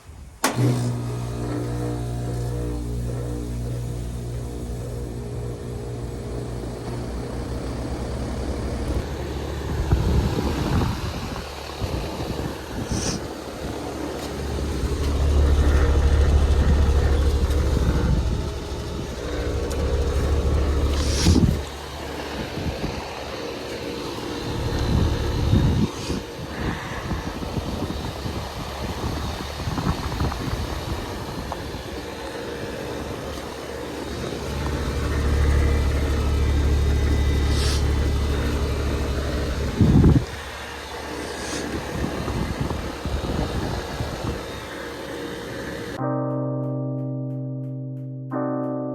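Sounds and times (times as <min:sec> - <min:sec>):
air conditioner humming: 0:00.0 - 0:46.0
short hiss: 0:12.9 - 0:13.3, 0:20.9 - 0:21.6, 0:37.4 - 0:38.0, 0:41.1 - 0:41.8.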